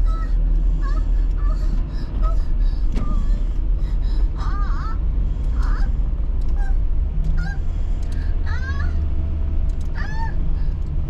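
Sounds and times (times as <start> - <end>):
car road and engine rumble: 0.0 - 11.0.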